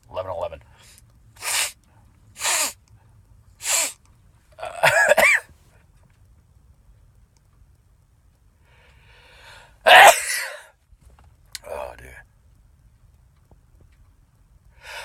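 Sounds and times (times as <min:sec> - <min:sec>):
man sneezing: 0:01.4 - 0:01.8, 0:02.4 - 0:02.8, 0:03.6 - 0:04.0, 0:04.6 - 0:05.5, 0:09.9 - 0:10.7.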